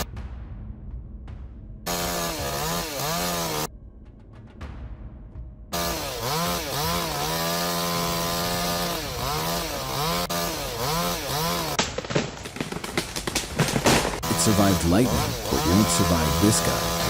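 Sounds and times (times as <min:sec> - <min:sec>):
chainsaw revving: 0:01.9 - 0:03.7, 0:05.8 - 0:17.0.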